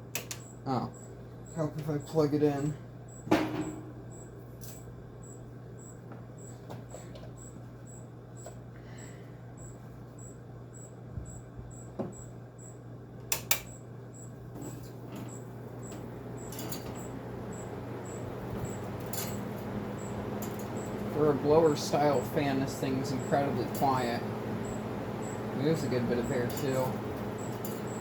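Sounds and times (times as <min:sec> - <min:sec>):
air conditioner fan humming: 0:00.0 - 0:28.0
sharp clicks: 0:13.2 - 0:13.8.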